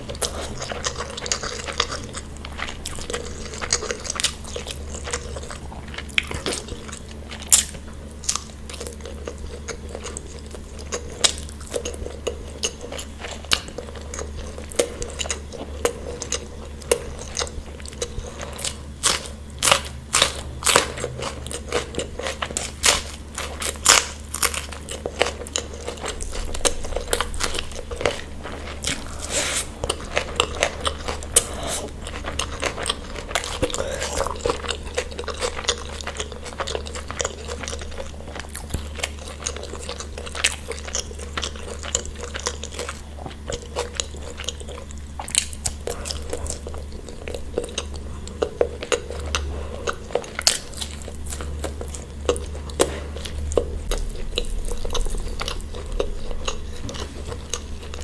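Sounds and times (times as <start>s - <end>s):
person chewing crunchy food: 0.0s - 58.0s
steady low hum: 0.0s - 58.0s.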